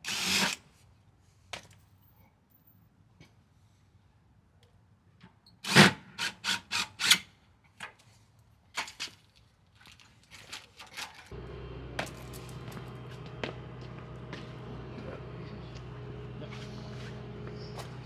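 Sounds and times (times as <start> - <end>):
steady hum: 11.3 - 18.0.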